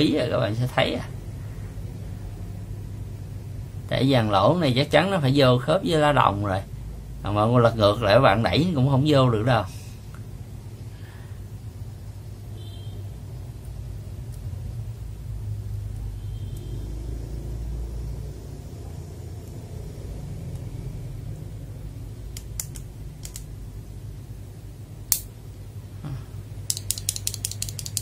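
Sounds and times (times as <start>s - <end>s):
low room hum: 0.0s - 28.0s
keyboard parts clicking: 22.3s - 23.5s, 26.7s - 28.0s
sharp plastic click: 22.3s - 23.5s.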